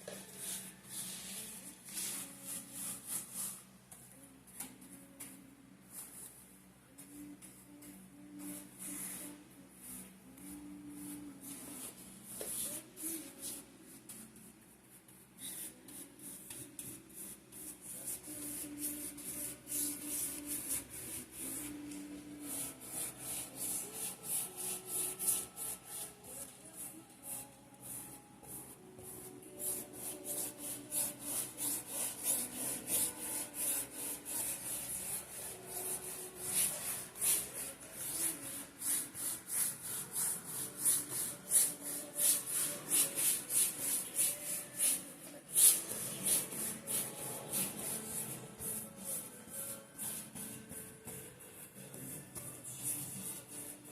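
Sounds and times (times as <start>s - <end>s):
faint background music: 0.0s - 53.9s
brush scratching on canvas: 0.1s - 3.6s, 11.0s - 53.9s.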